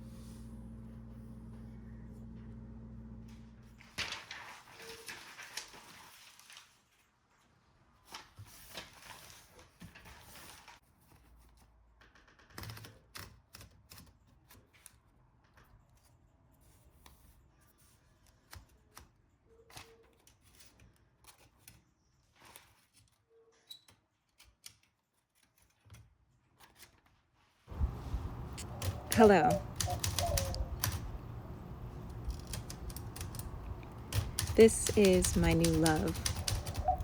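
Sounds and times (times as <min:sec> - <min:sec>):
typewriter clicks and taps: 0:28.4 - 0:31.2, 0:32.0 - 0:37.0.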